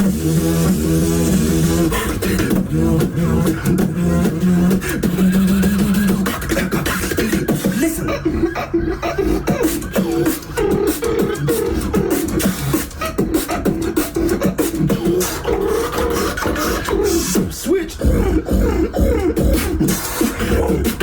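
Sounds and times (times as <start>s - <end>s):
vocal drum and hi-hat sounds: 0.0s - 8.5s, 9.1s - 21.0s
sung beatbox bass line: 0.0s - 21.0s.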